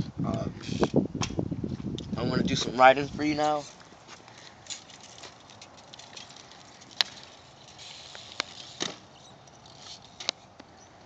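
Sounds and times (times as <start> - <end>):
bike clacks and knocks: 8.1 - 9.1.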